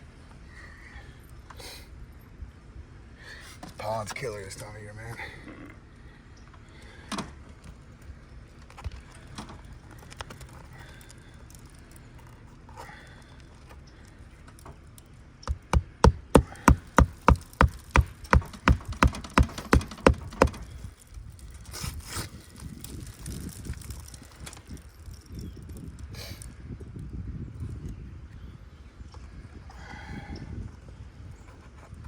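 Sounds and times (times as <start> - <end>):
hammer blows on nails: 15.4 - 21.0
shingle scraping: 15.4 - 24.8.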